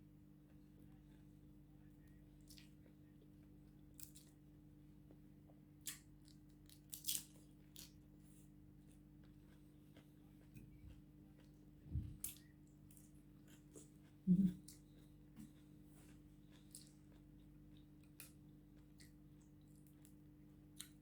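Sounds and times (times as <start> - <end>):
low steady hum: 0.0 - 21.0
person eating crunches: 3.9 - 4.4, 5.8 - 20.1.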